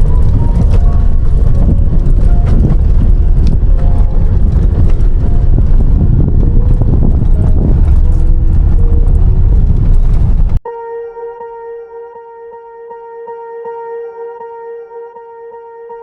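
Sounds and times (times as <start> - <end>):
rattles and knocks: 0.0 - 10.6
tyres rumbling on rough road: 0.0 - 10.6
wind on microphone: 0.0 - 10.6.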